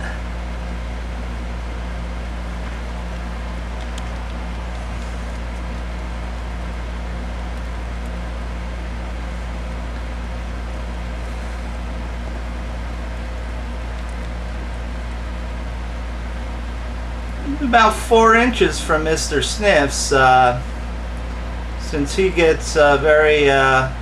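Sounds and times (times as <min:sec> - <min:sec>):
low machine hum: 0:00.0 - 0:24.0.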